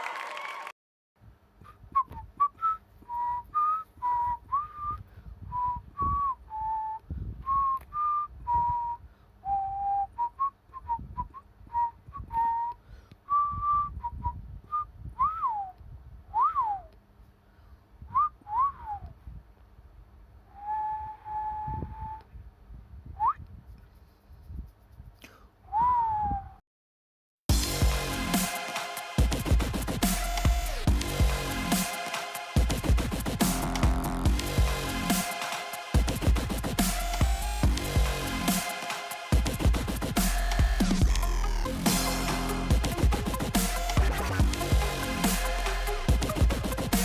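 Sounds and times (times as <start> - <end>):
person whistling a tune: 1.6 - 16.9, 18.1 - 19.1, 20.5 - 22.3, 23.2 - 23.4, 25.7 - 26.6.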